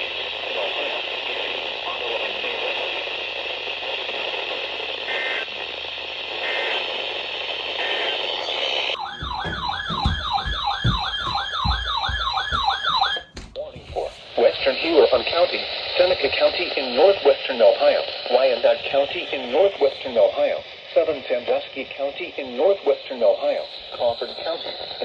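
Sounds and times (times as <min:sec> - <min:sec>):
radio static hiss: 0:00.0 - 0:09.0, 0:14.0 - 0:25.0
low thumps: 0:09.0 - 0:14.8.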